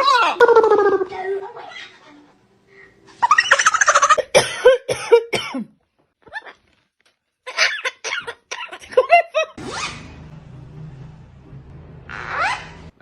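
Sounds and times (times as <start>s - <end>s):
parrot squawking: 12.1s - 13.0s.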